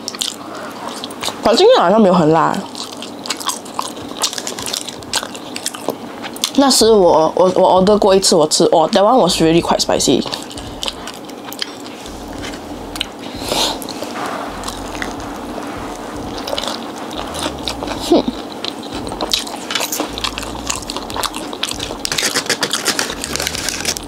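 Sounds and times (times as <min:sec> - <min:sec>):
chewing crunchy fried chicken: 0:00.0 - 0:06.8, 0:10.1 - 0:24.0
wet mouth clicks: 0:10.3 - 0:24.0.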